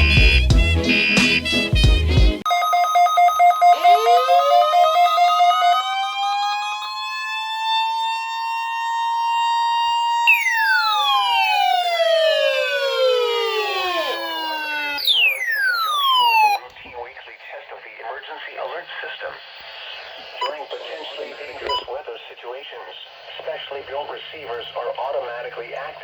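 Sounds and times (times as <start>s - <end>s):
pulsing two-tone alarm: 2.5s - 16.6s
warning siren winding: 2.5s - 16.6s.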